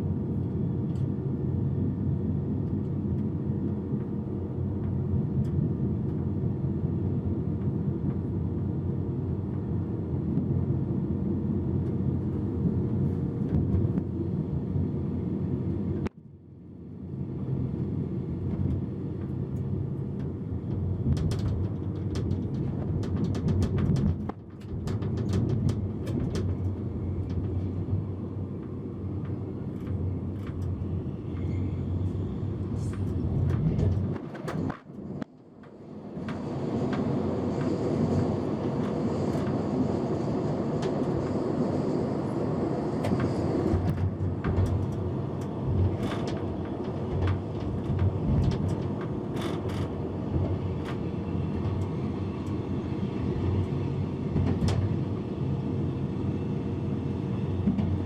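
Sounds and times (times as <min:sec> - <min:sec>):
train rumbling on track: 0:00.0 - 0:16.1, 0:17.0 - 0:58.0
wheels clicking on rails: 0:20.2 - 0:27.8, 0:43.8 - 0:52.6.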